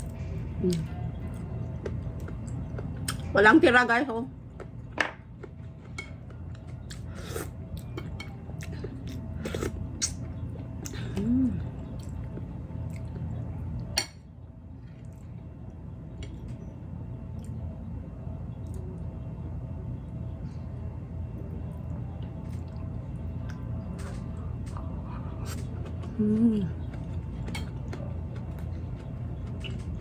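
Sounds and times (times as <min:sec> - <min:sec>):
chewing and mouth smacks: 0:11.8 - 0:13.5, 0:26.8 - 0:30.0.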